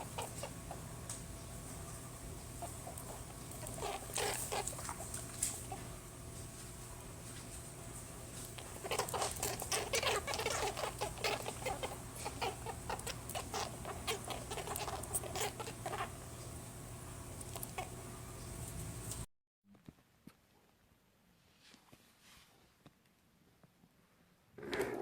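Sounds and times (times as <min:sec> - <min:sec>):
rabbit making short sounds: 0:00.0 - 0:00.9, 0:02.5 - 0:06.0, 0:08.4 - 0:16.2
steady low hum: 0:00.0 - 0:19.3.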